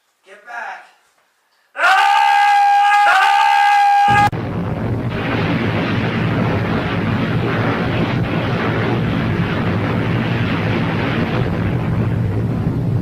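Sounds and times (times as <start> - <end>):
deep explosion rumble: 4.1 - 13.0.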